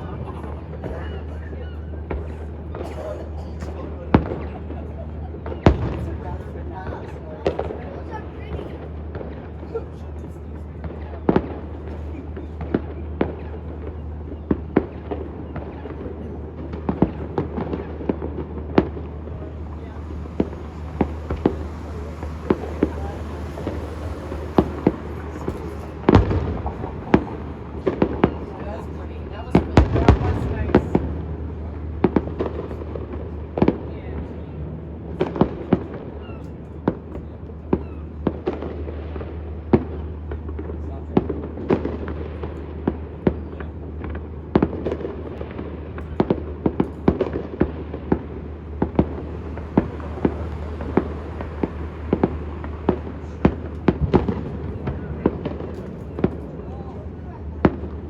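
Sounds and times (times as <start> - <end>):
fireworks bangs: 0.0 - 58.0
steady low hum: 0.0 - 58.0
steady low rumble: 0.0 - 58.0.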